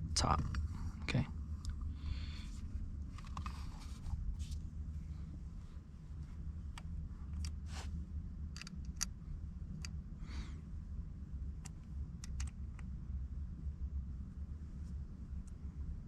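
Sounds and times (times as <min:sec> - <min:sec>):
low steady hum: 0:00.0 - 0:16.0
small clicks and taps: 0:11.6 - 0:12.9.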